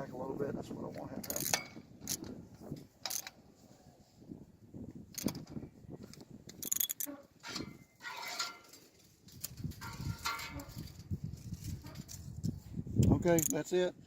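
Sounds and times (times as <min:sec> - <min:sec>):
metal tools clicking and clinking: 0:01.2 - 0:02.3, 0:03.0 - 0:03.4, 0:06.5 - 0:11.1, 0:13.3 - 0:13.6.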